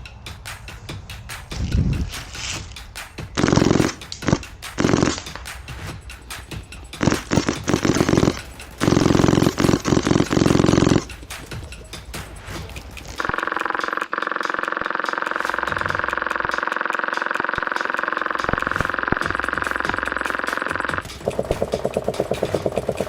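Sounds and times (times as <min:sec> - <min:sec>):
airsoft gun firing bursts: 0:03.4 - 0:05.5, 0:07.0 - 0:11.2, 0:13.2 - 0:23.0.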